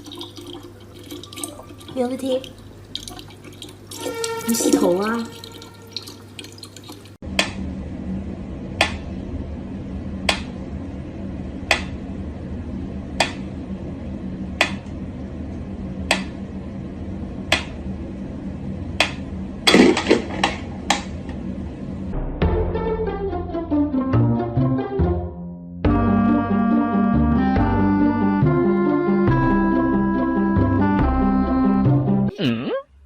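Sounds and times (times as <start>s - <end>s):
low hum: 7.2s - 24.0s.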